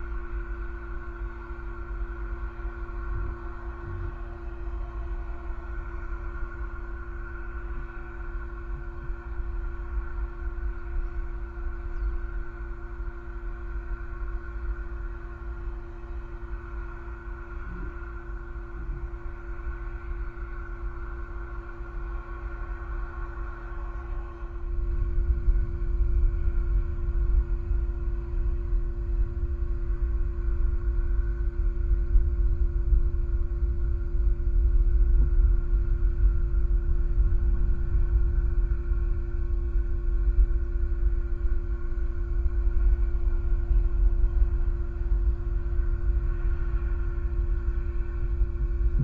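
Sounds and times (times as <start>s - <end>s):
steady multi-tone hum: 0.0s - 49.0s.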